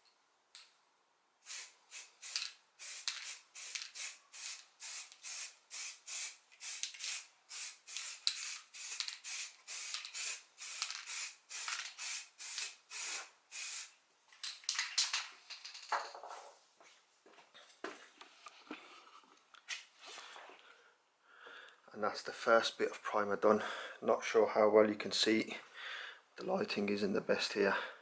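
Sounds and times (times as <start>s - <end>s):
spray can hissing in bursts: 1.4s - 13.9s.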